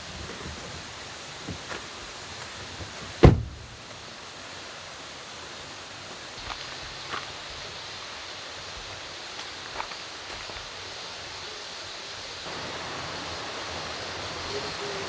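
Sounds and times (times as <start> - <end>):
rushing hiss: 0.0 - 15.0
car door shutting: 3.2 - 3.8.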